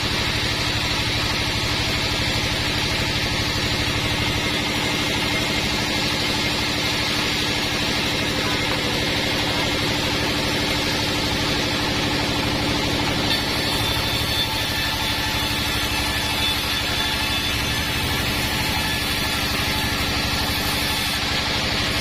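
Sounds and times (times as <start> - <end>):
band sawmill drone: 0.0 - 22.0.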